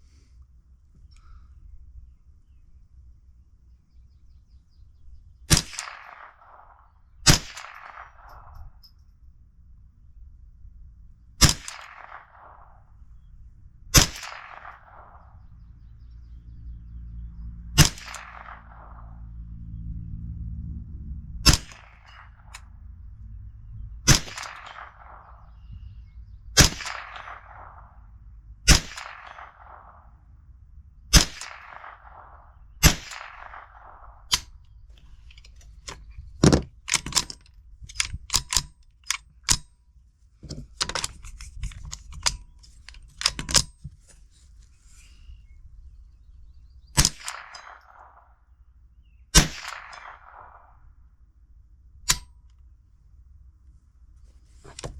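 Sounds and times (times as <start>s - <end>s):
single gunshots: 5.5s - 8.6s, 11.4s - 12.8s, 13.9s - 15.4s, 17.8s - 19.3s, 21.4s - 22.6s, 24.1s - 25.7s, 26.6s - 30.3s, 31.1s - 34.6s, 49.3s - 50.9s
sharp metallic clicks: 5.5s - 9.1s, 17.8s - 19.4s, 21.4s - 23.3s, 24.1s - 25.9s, 26.5s - 30.3s, 31.1s - 39.8s, 40.4s - 44.2s, 46.8s - 48.3s, 49.4s - 51.0s, 52.0s - 52.7s, 54.6s - 54.9s.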